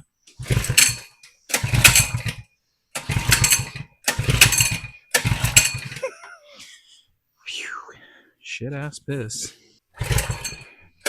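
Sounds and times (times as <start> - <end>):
minibike engine sputtering: 0.0 - 6.2, 10.0 - 11.0.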